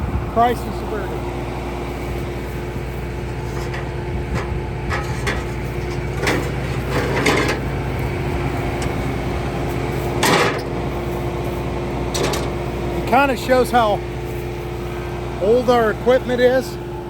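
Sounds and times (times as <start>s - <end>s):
combine harvester engine running: 0.0s - 17.0s
knocks and clatters: 3.5s - 7.7s, 10.2s - 10.8s.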